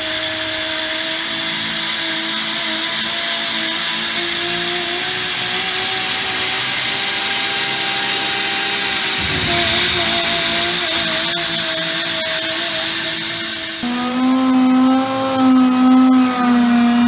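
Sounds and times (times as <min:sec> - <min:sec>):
machining motor whine: 0:09.1 - 0:11.8.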